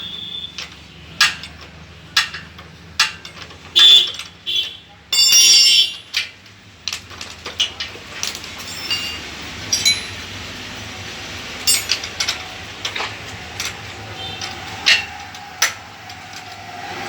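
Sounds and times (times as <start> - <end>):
metallic clinks and taps: 5.1 - 6.3, 8.2 - 10.5, 11.6 - 13.0.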